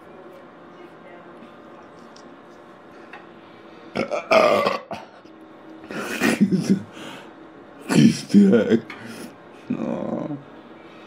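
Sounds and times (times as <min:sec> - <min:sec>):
man burping: 0:03.9 - 0:05.2.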